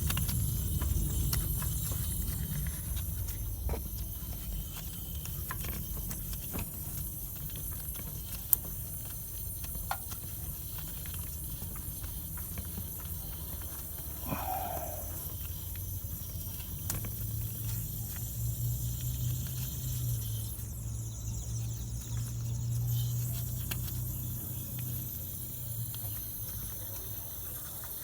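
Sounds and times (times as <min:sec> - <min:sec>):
irregular clicks and ticks: 0:00.0 - 0:20.7.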